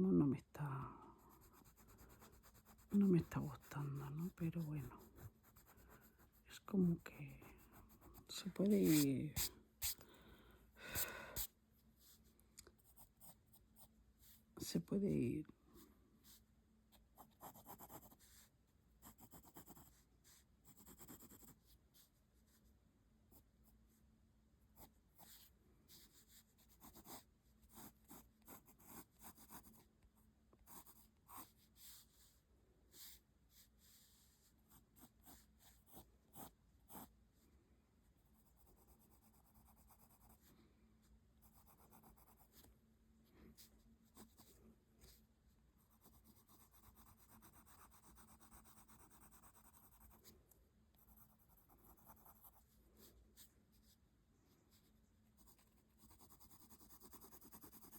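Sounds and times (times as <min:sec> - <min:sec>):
pencil rubbing shading: 0:01.2 - 0:06.6, 0:07.2 - 0:10.0, 0:17.1 - 0:22.6, 0:24.8 - 0:29.9, 0:30.6 - 0:37.1, 0:41.4 - 0:42.7, 0:45.8 - 0:50.3, 0:51.0 - 0:54.0, 0:55.4 - 0:57.9
pencil scratching on paper: 0:01.2 - 0:10.0, 0:17.1 - 0:22.6, 0:24.8 - 0:29.9, 0:30.6 - 0:37.1, 0:38.4 - 0:40.5, 0:41.4 - 0:42.7, 0:43.6 - 0:45.2, 0:45.8 - 0:50.3, 0:50.9 - 0:54.0, 0:55.4 - 0:57.9.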